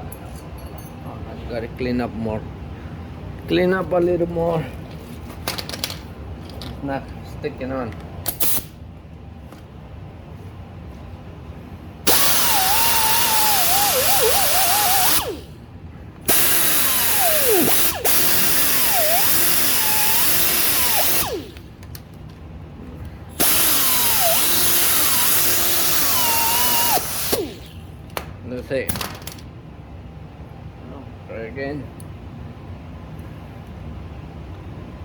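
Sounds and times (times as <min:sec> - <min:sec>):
power tool whining: 0:12.1 - 0:15.6, 0:16.3 - 0:21.7, 0:23.4 - 0:27.9.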